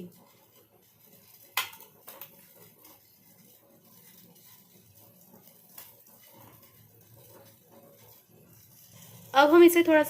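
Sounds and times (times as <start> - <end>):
sharp clicks at cooking pot: 1.5 - 2.4.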